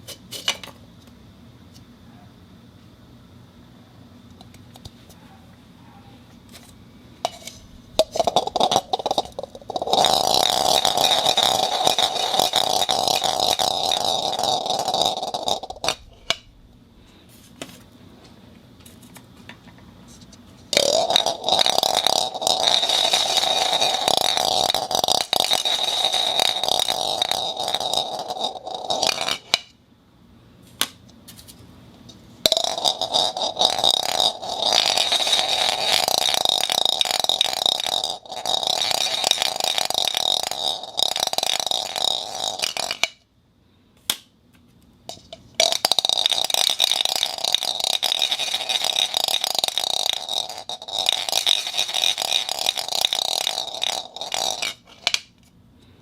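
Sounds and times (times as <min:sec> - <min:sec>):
marbles rattling in plastic cup: 0:07.3 - 0:16.7, 0:20.7 - 0:29.7, 0:32.4 - 0:43.2, 0:45.1 - 0:55.3.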